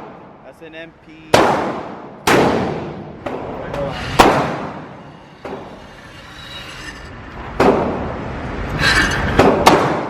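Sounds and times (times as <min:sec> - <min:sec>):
gunshots with echo: 0:01.3 - 0:03.5.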